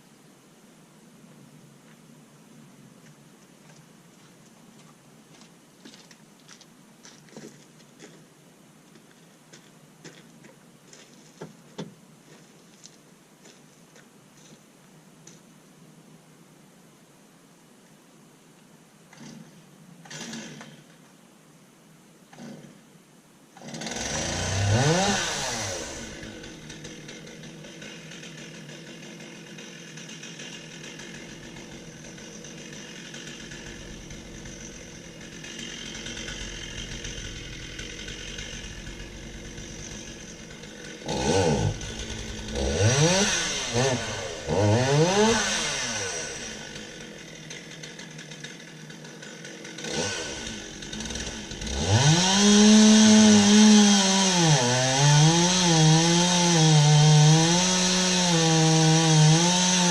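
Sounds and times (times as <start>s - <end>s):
chainsaw idling and revving: 19.1s - 20.8s, 22.3s - 22.8s, 23.6s - 59.9s
chainsaw cutting wood: 19.1s - 20.9s, 22.3s - 22.8s, 23.6s - 59.9s.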